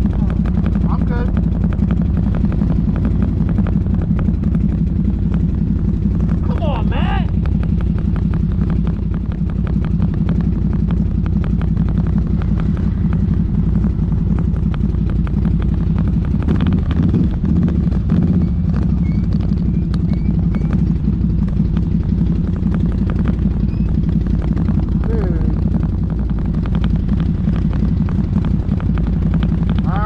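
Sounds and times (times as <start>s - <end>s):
atv engine droning: 0.0s - 30.0s.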